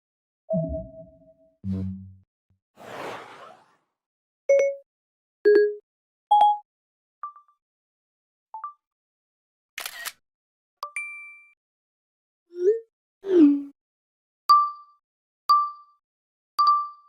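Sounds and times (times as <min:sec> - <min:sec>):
short swish: 0:02.8 - 0:03.8.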